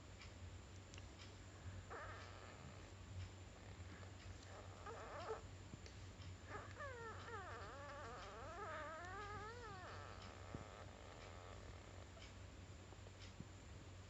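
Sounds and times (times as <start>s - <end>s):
pet whimpering: 1.9s - 2.7s, 4.4s - 5.4s, 6.5s - 12.1s.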